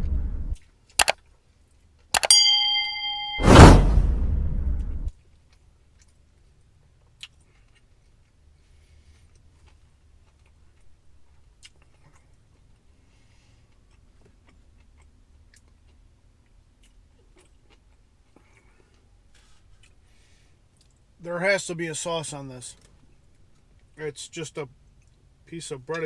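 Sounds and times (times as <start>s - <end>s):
loud noise burst: 3.2s - 4.6s
faint chewing: 5.2s - 21.1s, 24.6s - 26.0s.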